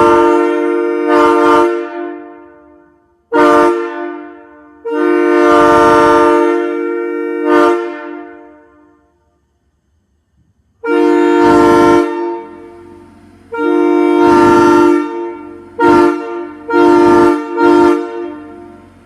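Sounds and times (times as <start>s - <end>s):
locomotive air horn blasts: 0.0s - 9.4s, 10.8s - 19.0s.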